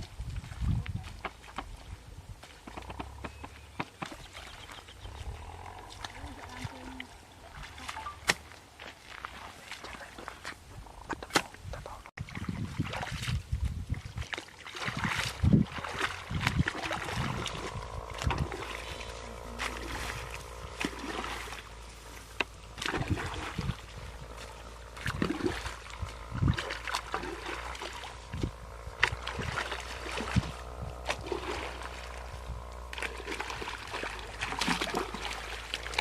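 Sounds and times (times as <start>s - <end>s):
water splashing and sloshing: 0.0s - 36.0s
steady droning tone: 15.6s - 36.0s.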